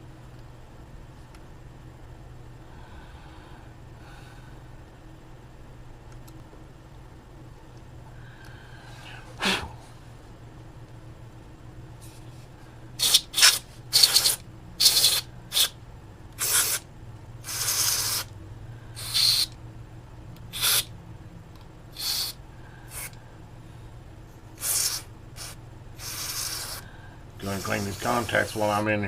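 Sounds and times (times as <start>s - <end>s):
short bursts of hiss: 13.0s - 15.7s, 16.4s - 16.8s, 17.4s - 18.3s, 19.0s - 19.5s, 20.5s - 20.9s, 22.0s - 23.2s, 24.6s - 26.8s, 27.4s - 28.6s.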